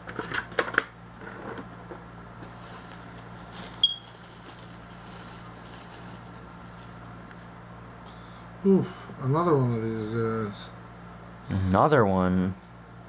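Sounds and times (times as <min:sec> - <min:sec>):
plastic packaging rustling: 0:00.0 - 0:07.8
steady low hum: 0:00.0 - 0:13.0.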